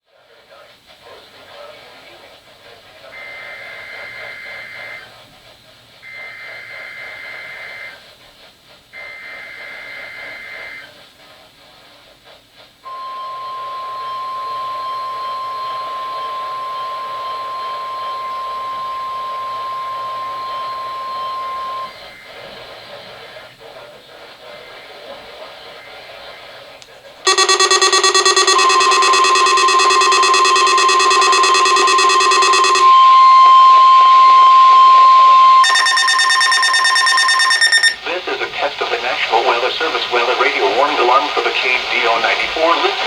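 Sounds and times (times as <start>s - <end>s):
steady warning alarm tone: 3.2s - 5.0s, 12.9s - 22.6s, 27.3s - 43.0s
harsh data bursts: 27.3s - 33.2s, 35.6s - 43.0s
radio static hiss: 38.0s - 43.0s.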